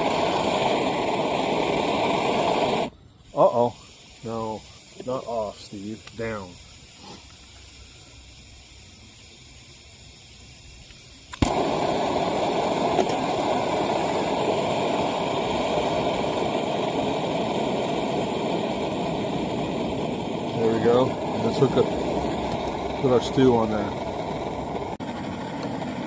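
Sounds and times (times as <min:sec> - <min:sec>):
stove burner rushing hiss: 0:00.0 - 0:26.0
stove lighting pop: 0:10.8 - 0:20.3, 0:21.0 - 0:23.1.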